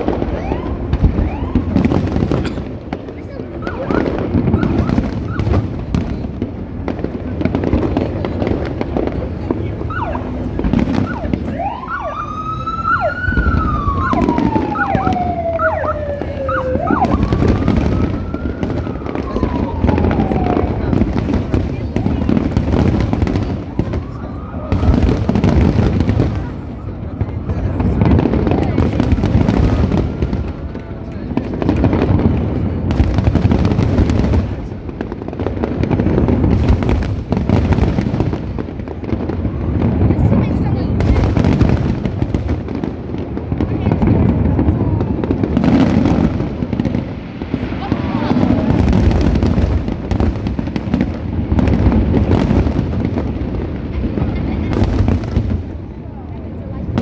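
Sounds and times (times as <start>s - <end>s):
siren wailing: 0.0s - 2.1s, 3.6s - 5.6s, 9.8s - 21.4s
crowd: 0.0s - 57.0s
fireworks rumbling: 0.0s - 57.0s.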